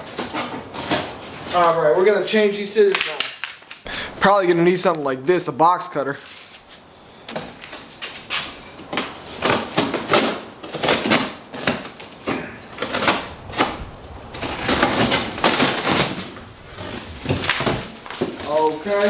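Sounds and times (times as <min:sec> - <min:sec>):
box cutter slicing packaging: 0:08.4 - 0:13.8, 0:14.4 - 0:18.4.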